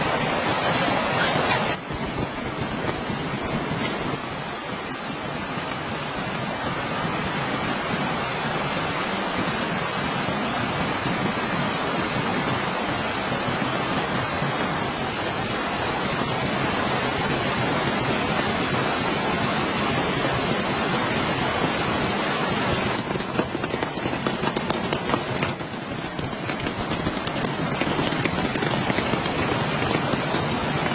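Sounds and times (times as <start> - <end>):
steady rain hiss: 0.0 - 30.9
raindrops striking: 21.1 - 30.9.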